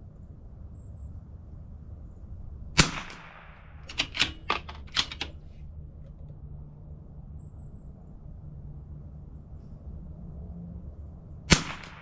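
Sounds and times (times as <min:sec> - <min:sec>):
rifle shot crack: 0:02.8 - 0:05.1, 0:11.5 - 0:12.0
rifle bolt metallic clicks: 0:03.9 - 0:05.5.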